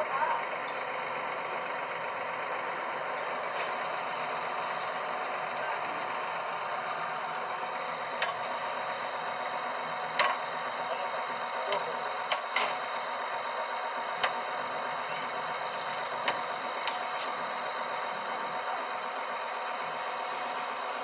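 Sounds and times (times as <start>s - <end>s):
drilling rig drone: 0.0s - 21.0s
sharp clicks: 11.7s - 12.8s, 14.2s - 14.4s.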